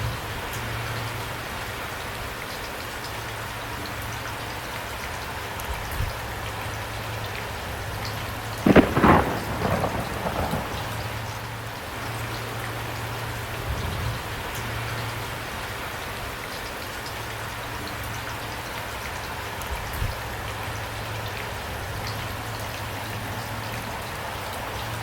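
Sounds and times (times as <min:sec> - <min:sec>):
steady rain falling: 0:00.0 - 0:25.0
thunder crack and rumble: 0:08.6 - 0:14.2.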